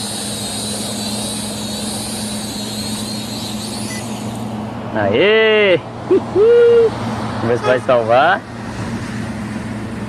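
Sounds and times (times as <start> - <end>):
toy drone propellers whining: 0.0 - 4.6.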